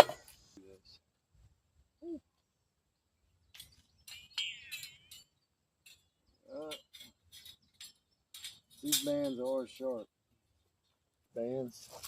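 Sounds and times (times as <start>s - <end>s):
metallic clinks and knocks: 3.5s - 10.1s.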